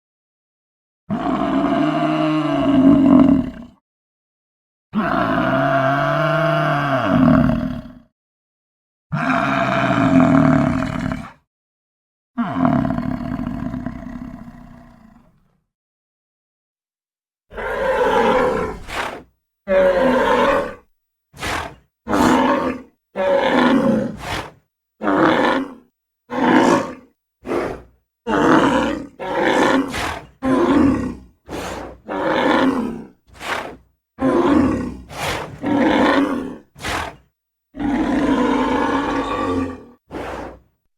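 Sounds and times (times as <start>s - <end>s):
buffalo grunting and bellowing: 21.4s - 25.6s, 26.3s - 37.2s, 40.1s - 40.6s.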